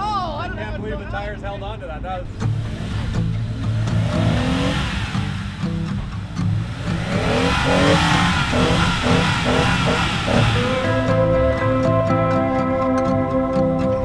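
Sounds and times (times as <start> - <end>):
music: 0.0 - 6.8, 8.9 - 14.0
vehicle engine revving: 2.2 - 14.0.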